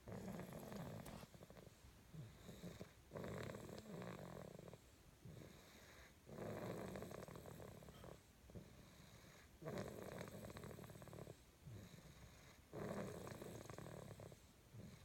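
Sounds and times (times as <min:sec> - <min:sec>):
soft breathing: 0:00.0 - 0:06.3
person snoring: 0:00.1 - 0:01.5.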